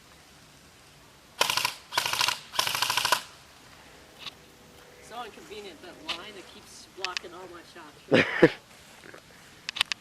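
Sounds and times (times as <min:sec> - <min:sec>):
airsoft gun full-auto bursts: 0:01.4 - 0:03.4.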